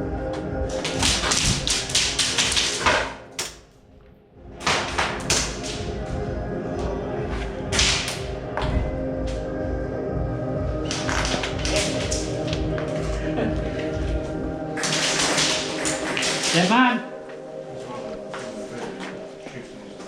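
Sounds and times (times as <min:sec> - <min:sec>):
airsoft guns firing: 0:14.8 - 0:16.7.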